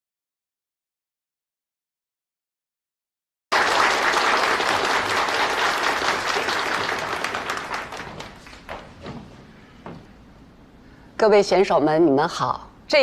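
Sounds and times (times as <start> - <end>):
audience applauding: 3.5 - 9.0.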